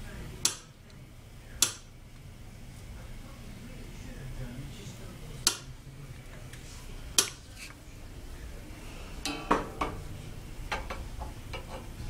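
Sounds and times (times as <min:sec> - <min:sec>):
hard objects knocking and clicking: 0:10.7 - 0:11.9.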